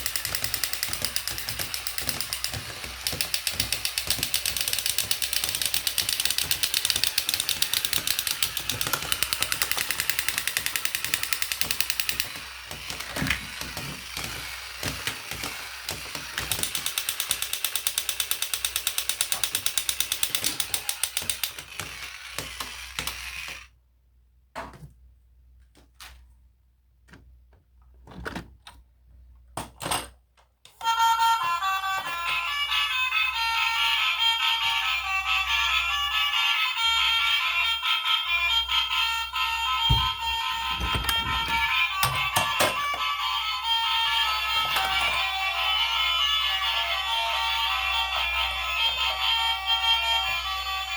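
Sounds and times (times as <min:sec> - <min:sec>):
toy gear mechanism rattling: 0:00.0 - 0:23.7, 0:31.6 - 0:50.9
toy handling clicks and knocks: 0:00.0 - 0:23.7, 0:29.4 - 0:36.4, 0:38.9 - 0:49.2
electronic toy melody: 0:00.1 - 0:13.0, 0:30.8 - 0:50.9.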